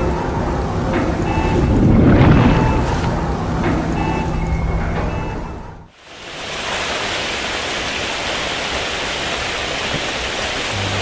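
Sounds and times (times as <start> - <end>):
steady rushing noise: 0.0 - 5.0.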